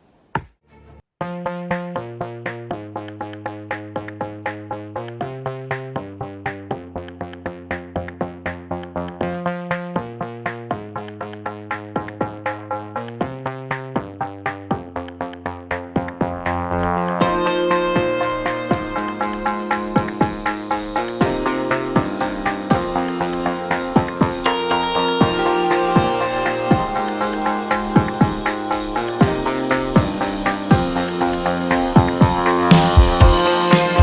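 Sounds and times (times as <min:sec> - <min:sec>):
electronic synthesizer music: 0:01.2 - 0:34.0.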